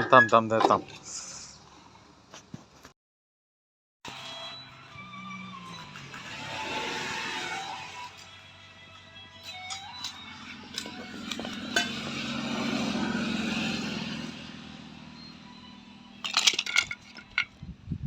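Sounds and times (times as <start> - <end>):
metal pump parts clinking: 9.4 - 12.1, 16.2 - 17.6.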